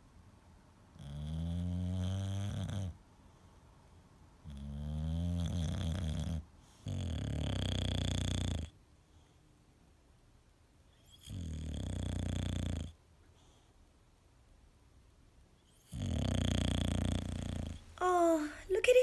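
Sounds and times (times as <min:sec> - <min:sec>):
dog snoring: 0:00.9 - 0:03.0, 0:04.4 - 0:08.8, 0:10.9 - 0:13.6, 0:15.6 - 0:18.0.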